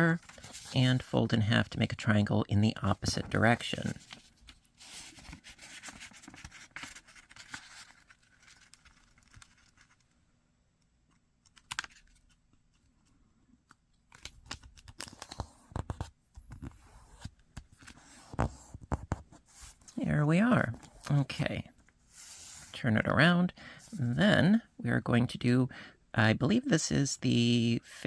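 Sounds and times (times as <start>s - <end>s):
paper rustling and scraping: 0.0s - 1.2s, 2.9s - 10.0s, 22.1s - 22.8s
sharp scratchy paper strokes: 22.1s - 22.8s.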